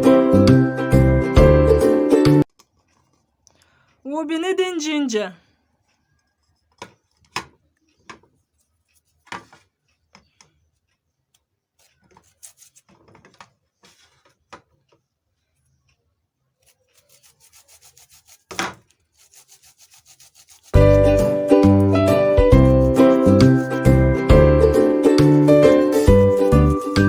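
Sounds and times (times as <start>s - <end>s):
quick scraping strokes: 12.2s - 12.9s, 16.6s - 21.4s, 22.6s - 24.0s
light knocks and rubbing: 16.9s - 19.0s.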